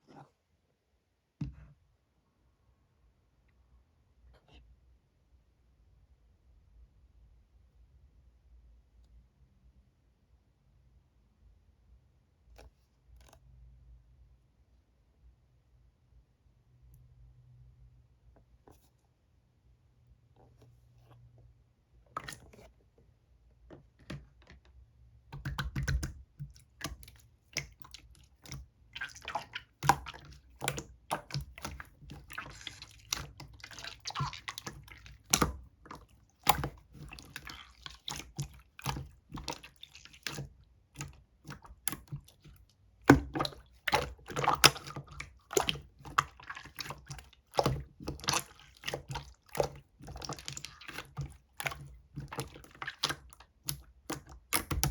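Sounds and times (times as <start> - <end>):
slime squished by hand: 25.3 - 54.9
sticky clicks and wet pops: 25.3 - 54.9.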